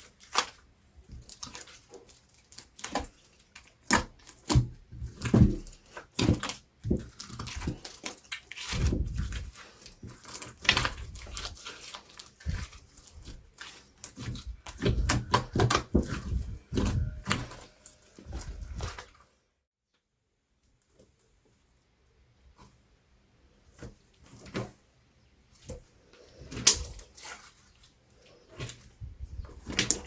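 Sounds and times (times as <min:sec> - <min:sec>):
slime squelching: 0:00.0 - 0:19.4, 0:25.6 - 0:30.0.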